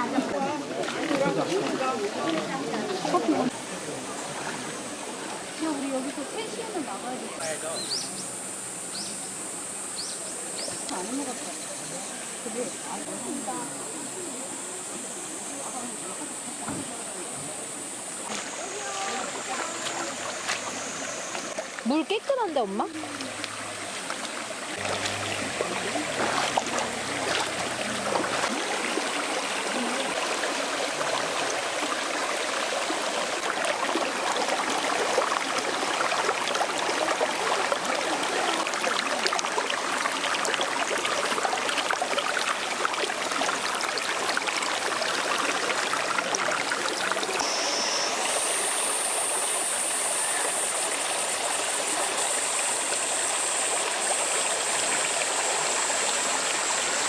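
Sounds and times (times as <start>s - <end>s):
stream babbling over rocks: 18.0s - 57.0s.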